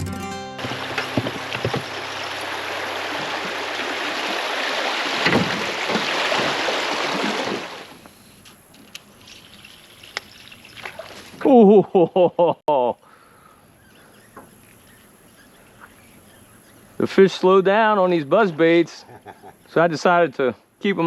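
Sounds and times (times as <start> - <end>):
rushing river rapid: 0.6 - 8.0.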